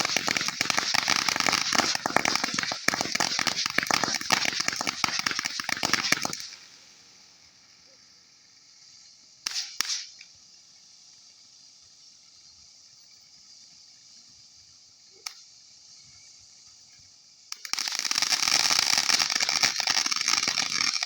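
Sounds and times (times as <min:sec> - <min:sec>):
fireworks crackling: 0:00.0 - 0:21.0.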